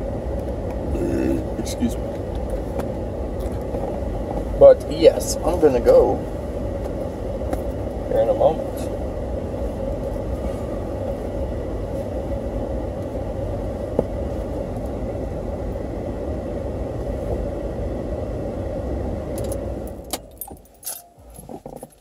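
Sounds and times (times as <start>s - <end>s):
vehicle engine running: 0.0s - 22.0s
keys jangling: 20.1s - 22.0s.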